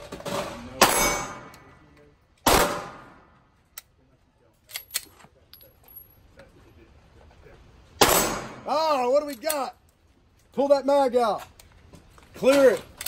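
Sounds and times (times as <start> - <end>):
pistol shot with ringing tail: 0.8 - 1.5, 2.5 - 3.2, 8.0 - 8.7.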